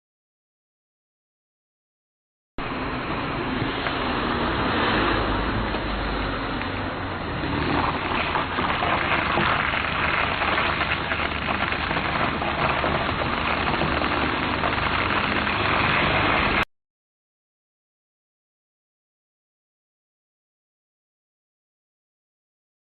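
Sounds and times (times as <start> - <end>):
low engine hum: 2.6 - 16.7
tyres crunching over gravel: 7.4 - 16.6.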